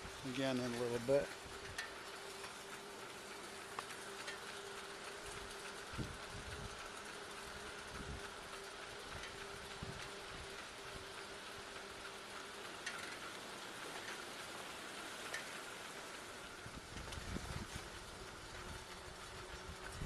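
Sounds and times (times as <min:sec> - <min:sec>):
faint steady hum: 0:00.0 - 0:20.0
wind gusts buffeting microphone: 0:16.6 - 0:20.0.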